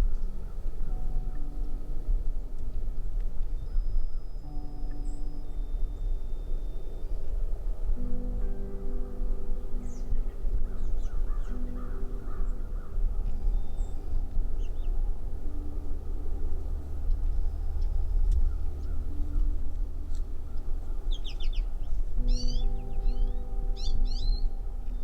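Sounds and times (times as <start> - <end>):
steady low rumble: 0.0 - 25.0.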